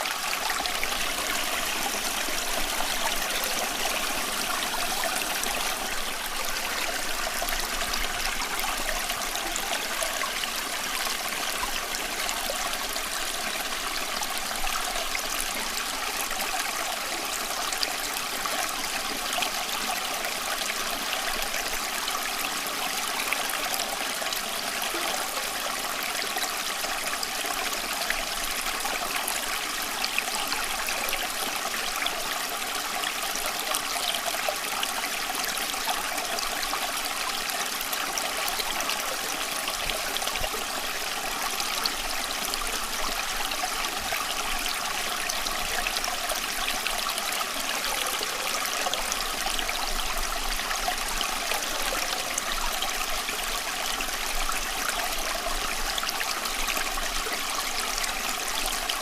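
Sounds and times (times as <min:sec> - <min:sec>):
water running and splashing: 0:00.0 - 0:16.6.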